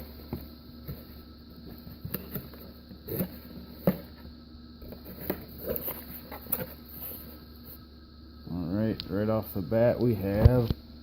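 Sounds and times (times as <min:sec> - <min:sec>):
cardboard packaging rustling: 0:00.1 - 0:07.4.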